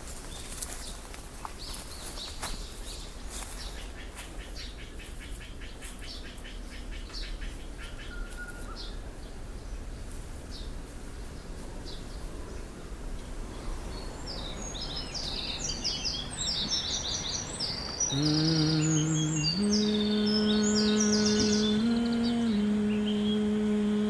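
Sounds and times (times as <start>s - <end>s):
low background hum: 12.8s - 24.0s
birds chirping: 13.2s - 24.0s
bird trill: 14.3s - 24.0s.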